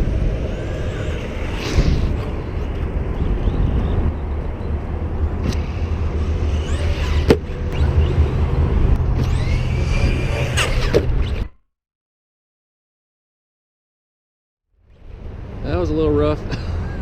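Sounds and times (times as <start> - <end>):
low rumble: 0.0 - 11.4
rc truck motor whining: 0.0 - 11.6.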